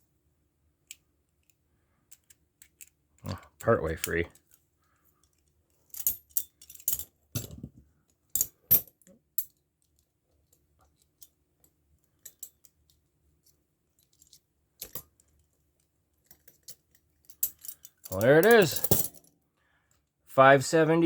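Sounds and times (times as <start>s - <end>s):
steel chains clinking: 16.5s - 19.3s.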